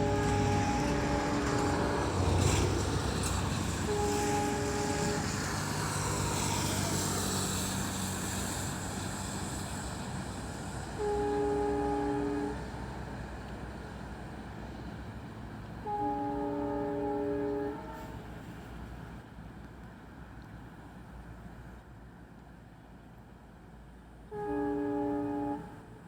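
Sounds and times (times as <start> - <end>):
locomotive horn blasts: 0.0 - 3.0, 3.7 - 7.0, 10.9 - 12.8, 15.8 - 18.3, 24.3 - 26.0
train engine rumble: 0.0 - 26.0.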